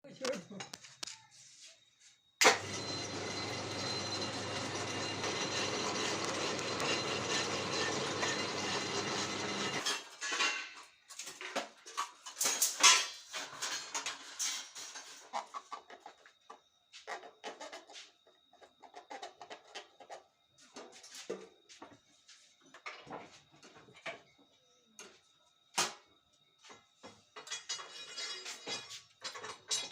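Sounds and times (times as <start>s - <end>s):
sawmill engine running: 2.4s - 9.8s.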